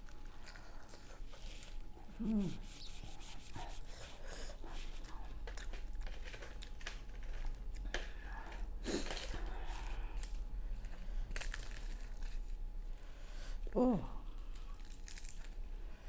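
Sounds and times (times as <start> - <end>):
chewing and biting: 0.0 - 12.6, 14.4 - 15.8.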